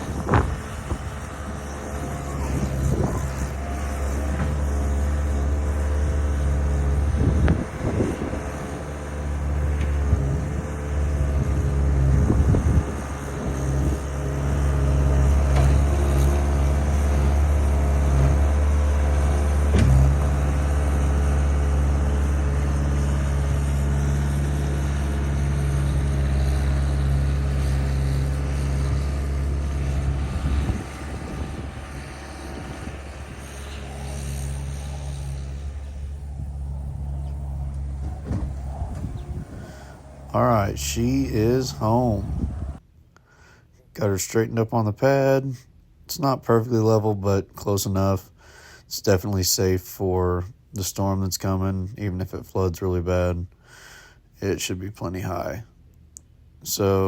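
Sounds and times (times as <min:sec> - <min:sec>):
skid steer engine running: 0:00.0 - 0:42.8.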